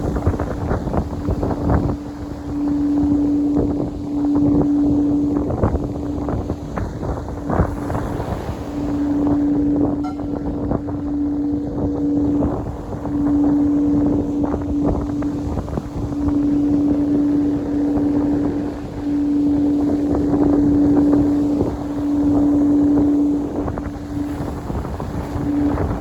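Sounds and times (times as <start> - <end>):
wind on microphone: 0.0 - 26.0
steady tone: 8.9 - 26.0.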